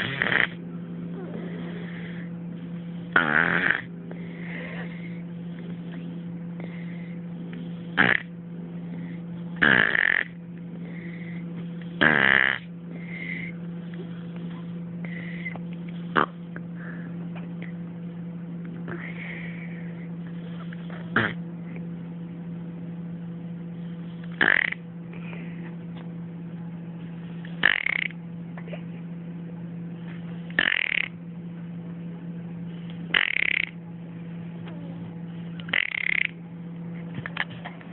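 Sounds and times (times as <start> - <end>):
loud snoring snorts: 0.0 - 0.6, 3.1 - 3.9, 8.0 - 8.3, 9.6 - 10.4, 12.0 - 13.5, 20.9 - 21.4, 24.4 - 24.8, 30.6 - 31.1
steady low hum: 0.0 - 37.9
soft breaths: 4.0 - 8.0, 10.7 - 12.0, 18.8 - 21.8, 25.1 - 25.8.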